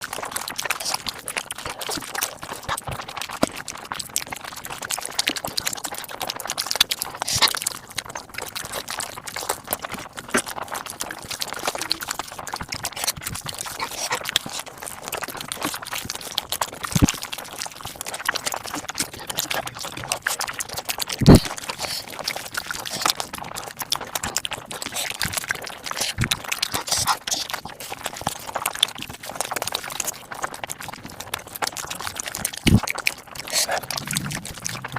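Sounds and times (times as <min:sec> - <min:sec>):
sped-up chewing and crunching: 0:00.0 - 0:34.9.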